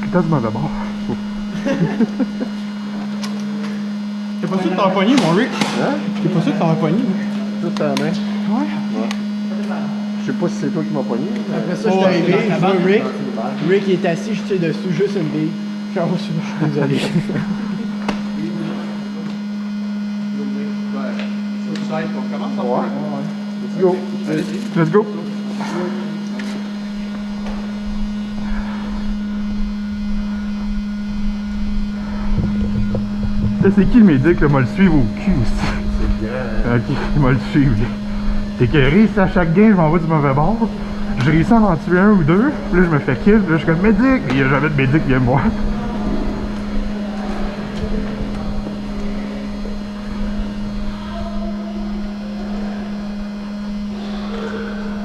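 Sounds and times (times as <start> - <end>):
small fan buzzing: 0.0 - 55.0
low rumble: 27.8 - 35.2.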